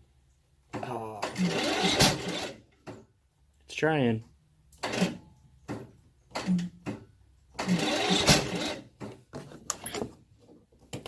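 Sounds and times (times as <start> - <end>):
starter cranking engine: 1.2 - 2.7, 7.6 - 9.0.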